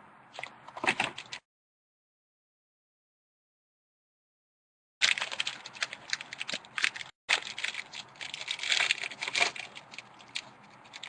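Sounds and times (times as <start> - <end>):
packaging crinkling and tearing: 5.0 - 11.0.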